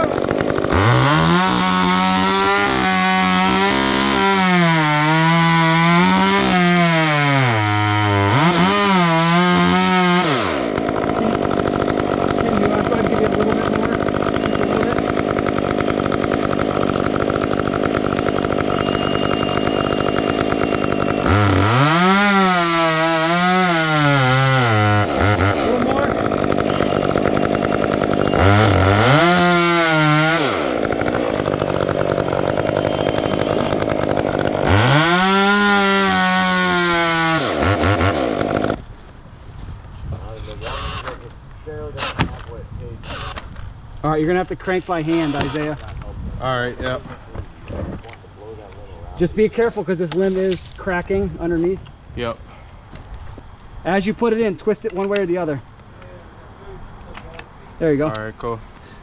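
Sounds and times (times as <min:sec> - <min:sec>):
chainsaw cutting wood: 0:00.0 - 0:38.9, 0:40.4 - 0:41.3, 0:41.9 - 0:43.7, 0:44.3 - 0:45.9.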